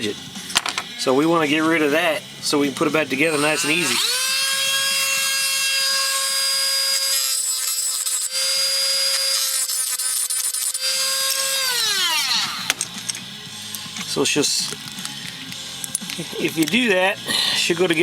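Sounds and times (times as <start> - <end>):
rotary tool grinding metal: 0.0 - 18.0.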